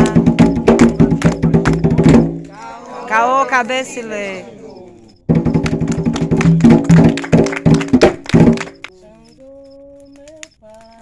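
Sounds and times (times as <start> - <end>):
hand drums played fast: 0.0 - 2.4, 5.3 - 8.9.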